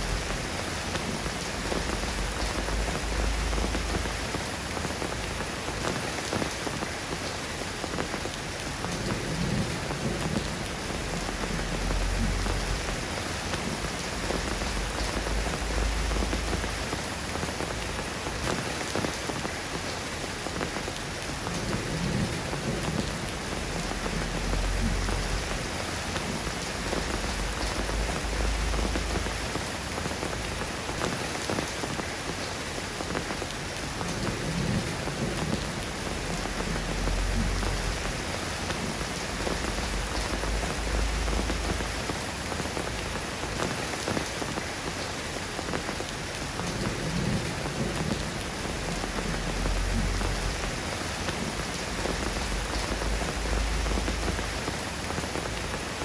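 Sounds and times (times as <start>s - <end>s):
steady rain falling: 0.0s - 56.0s
low rumble: 23.3s - 29.5s, 36.1s - 42.1s.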